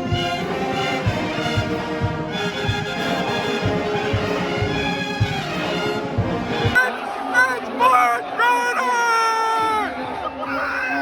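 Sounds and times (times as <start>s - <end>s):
marching band brass: 0.0s - 7.0s.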